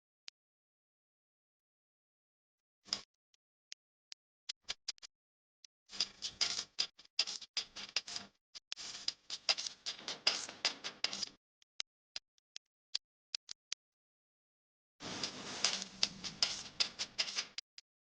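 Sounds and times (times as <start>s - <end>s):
sharp clicks and scratching: 5.9s - 12.6s, 15.0s - 17.8s.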